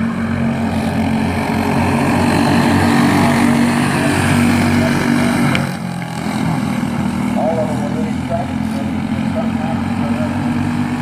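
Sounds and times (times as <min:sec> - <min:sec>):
small racing engines: 0:00.0 - 0:11.0.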